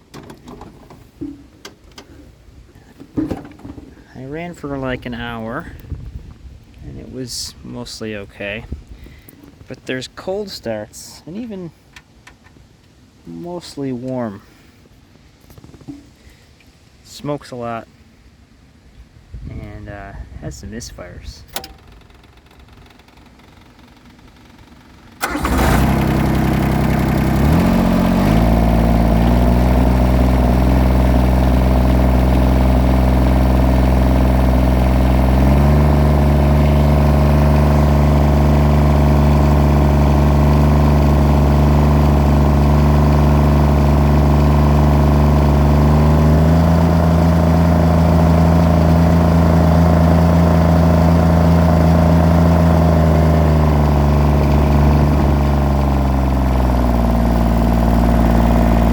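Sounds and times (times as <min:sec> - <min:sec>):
diesel engine misfiring: 0:21.5 - 0:58.9.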